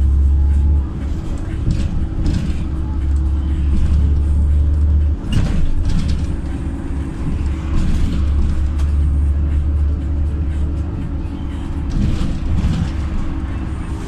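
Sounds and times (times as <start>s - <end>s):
bus body rattling: 0.0s - 14.0s
bus engine droning: 0.0s - 14.0s.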